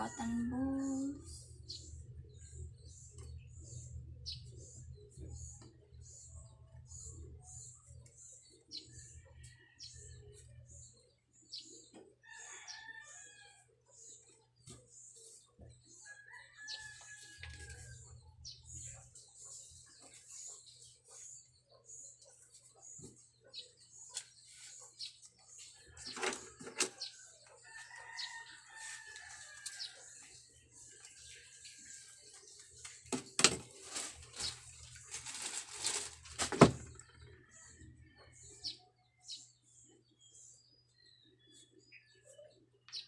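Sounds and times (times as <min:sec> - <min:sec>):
paper and plastic crinkling: 0:33.4 - 0:36.9
soft rustling: 0:33.8 - 0:36.4.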